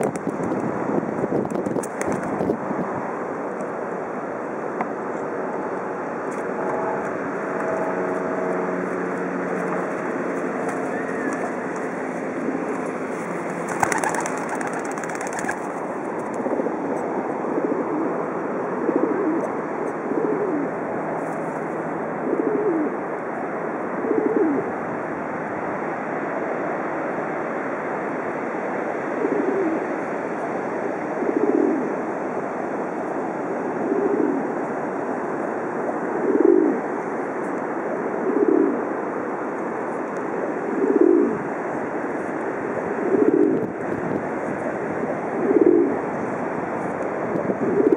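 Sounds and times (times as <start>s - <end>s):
pigeons cooing: 9.1s - 15.7s, 18.8s - 20.8s, 22.2s - 23.0s, 24.0s - 24.7s, 29.2s - 29.8s, 31.2s - 31.9s, 33.8s - 34.5s, 36.1s - 36.8s, 38.0s - 38.9s, 40.6s - 41.4s, 45.4s - 46.1s.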